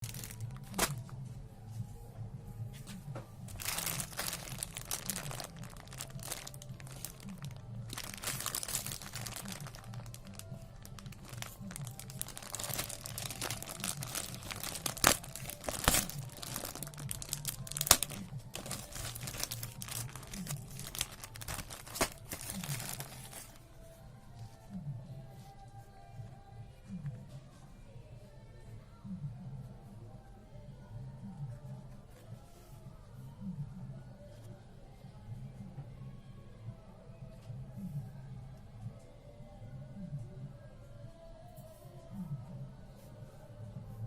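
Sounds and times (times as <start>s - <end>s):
plastic packaging crinkling: 0.0s - 1.1s, 3.5s - 23.6s
quiet background music: 0.0s - 44.0s.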